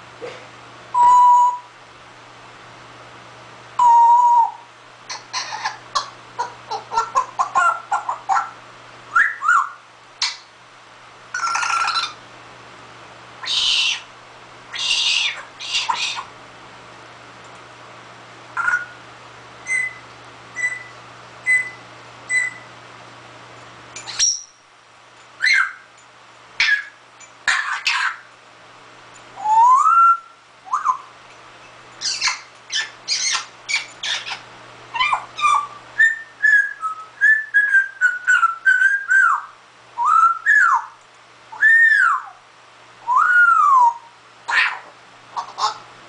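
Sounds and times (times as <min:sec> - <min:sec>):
parrot whistling: 0:01.0 - 0:01.7, 0:03.8 - 0:05.8, 0:09.1 - 0:10.4, 0:13.4 - 0:14.1, 0:14.7 - 0:16.3, 0:18.6 - 0:19.0, 0:19.6 - 0:20.0, 0:20.6 - 0:22.7, 0:25.4 - 0:25.9, 0:26.6 - 0:28.2, 0:29.4 - 0:31.1, 0:32.0 - 0:42.4, 0:43.0 - 0:44.8
parrot chattering calls: 0:05.1 - 0:08.6, 0:11.3 - 0:12.2, 0:13.4 - 0:14.1, 0:14.7 - 0:16.3, 0:18.6 - 0:19.0, 0:25.4 - 0:25.9, 0:26.6 - 0:28.3, 0:32.0 - 0:36.6, 0:43.9 - 0:45.9.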